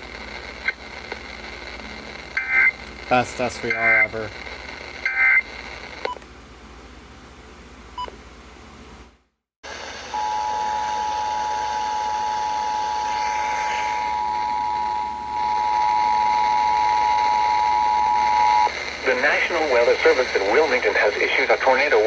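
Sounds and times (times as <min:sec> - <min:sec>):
faint radio hiss: 0:00.0 - 0:06.0, 0:12.8 - 0:22.0.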